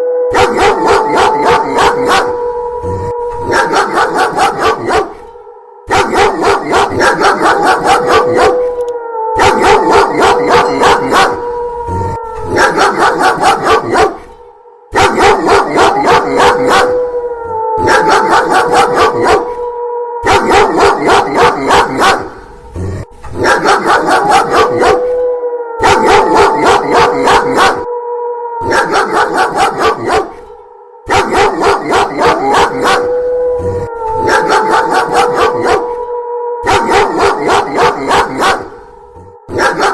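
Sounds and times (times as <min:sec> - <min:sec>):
gliding howl: 0:00.0 - 0:39.9
dog barking rapidly: 0:00.4 - 0:02.3, 0:03.5 - 0:05.2, 0:05.9 - 0:08.6, 0:09.4 - 0:11.4, 0:12.5 - 0:14.2, 0:14.9 - 0:17.0, 0:17.8 - 0:19.4, 0:20.2 - 0:22.3, 0:23.3 - 0:25.0, 0:25.8 - 0:27.8, 0:28.7 - 0:30.4, 0:31.1 - 0:33.1, 0:34.2 - 0:35.9, 0:36.7 - 0:38.8, 0:39.5 - 0:39.9.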